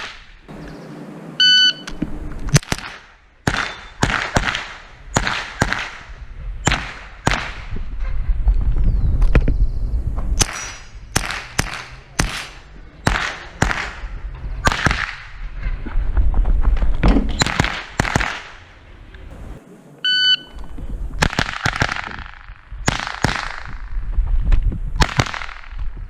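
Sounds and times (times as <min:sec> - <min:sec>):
rifle gunshots: 0:02.5 - 0:07.7, 0:10.4 - 0:15.3, 0:17.4 - 0:18.6, 0:21.2 - 0:23.8, 0:25.0 - 0:25.8.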